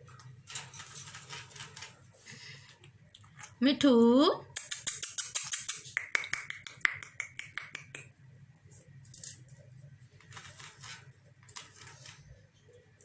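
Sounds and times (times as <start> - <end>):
parrot cracking peanuts: 4.5 - 8.1.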